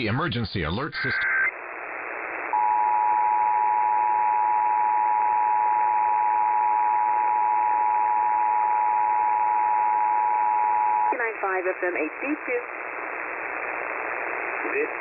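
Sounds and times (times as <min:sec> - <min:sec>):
radio hiss: 0:00.0 - 0:02.6, 0:11.1 - 0:15.0.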